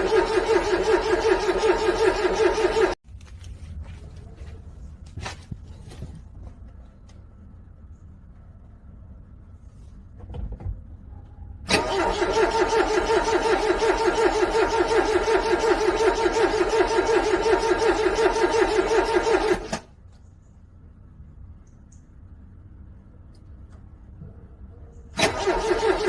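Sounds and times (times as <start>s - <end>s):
car starter cranking engine: 0.0s - 3.0s, 11.7s - 19.9s, 25.1s - 26.0s.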